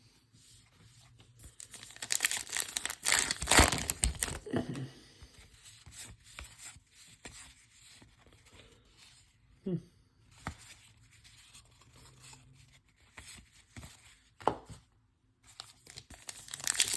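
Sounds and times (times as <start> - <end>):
cards rustling and clicking: 0.8 - 4.4, 15.5 - 16.9
wrapper tearing and crinkling: 1.6 - 4.4, 15.8 - 16.9.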